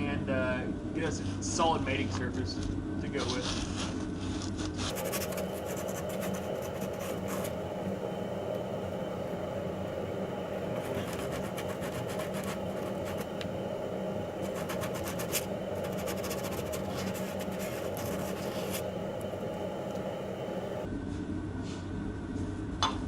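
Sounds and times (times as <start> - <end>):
steady hum: 0.0 - 22.8
sandpaper scratching metal: 3.3 - 7.5, 10.8 - 13.3, 14.4 - 18.9.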